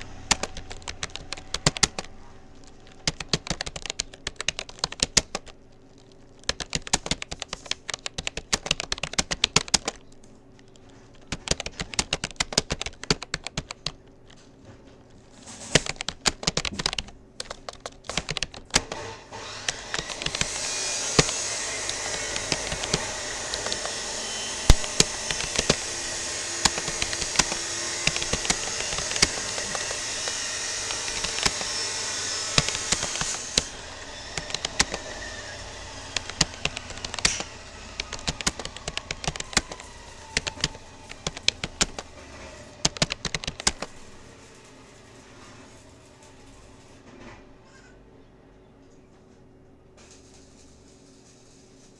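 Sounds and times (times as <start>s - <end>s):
loud steady rushing noise: 0.0s - 3.4s
computer keyboard typing: 0.0s - 44.7s.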